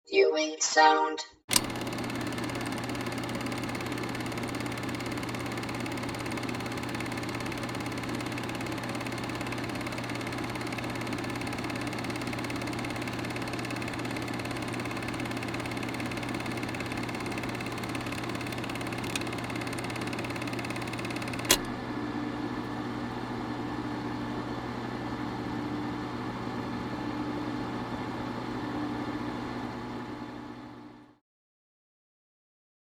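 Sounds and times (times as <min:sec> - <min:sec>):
sharp click: 0:01.5 - 0:01.7, 0:18.0 - 0:21.7
film advance clicking: 0:01.5 - 0:21.7
film projector whirring: 0:01.5 - 0:26.0.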